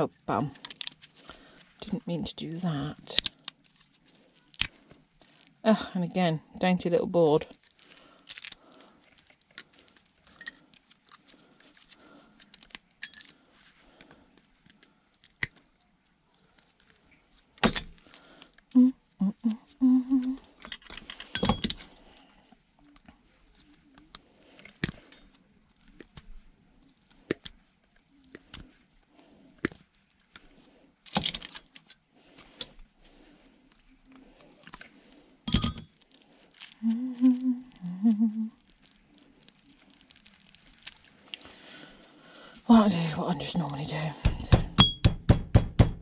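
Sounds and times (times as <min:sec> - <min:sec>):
hand tools clicking and clinking: 0:10.3 - 0:11.2, 0:13.0 - 0:13.4, 0:17.6 - 0:18.0, 0:20.2 - 0:21.9, 0:35.5 - 0:36.0, 0:44.3 - 0:45.4.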